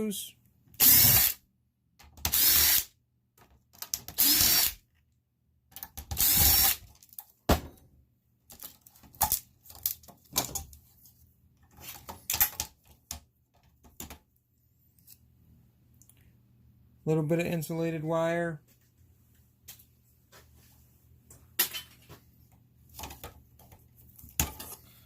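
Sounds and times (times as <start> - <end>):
power drill removing screws: 0.8 - 1.4, 2.2 - 2.9, 3.9 - 4.8, 6.1 - 6.9.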